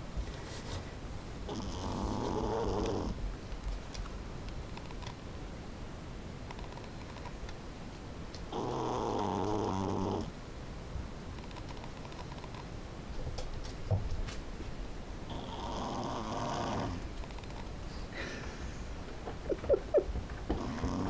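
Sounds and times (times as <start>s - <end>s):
dog snoring: 1.5s - 3.2s, 8.5s - 10.3s, 15.3s - 17.6s, 20.5s - 21.0s.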